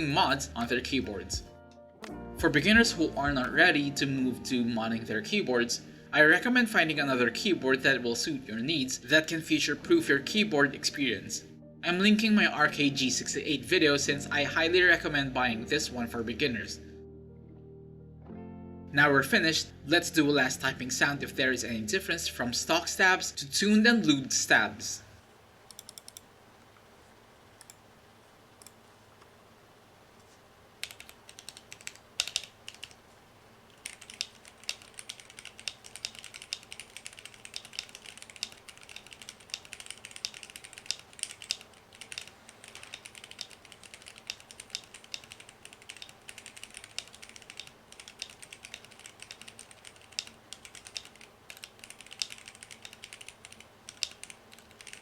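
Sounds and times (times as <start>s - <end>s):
typing on mechanical keyboard: 25.7s - 26.2s, 30.8s - 33.0s, 33.7s - 55.0s.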